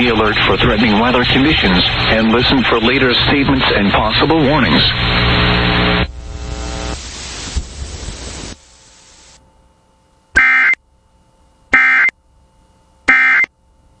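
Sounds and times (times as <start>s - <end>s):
radio hiss: 0.0s - 9.4s
screeching data tone bursts: 11.8s - 12.1s, 13.1s - 13.5s.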